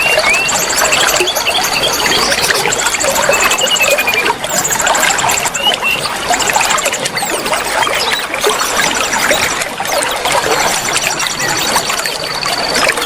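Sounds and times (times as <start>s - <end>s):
high-pitched bird trills: 0.0s - 6.0s
bird chirps: 0.0s - 6.1s
water running and trickling: 0.0s - 13.0s.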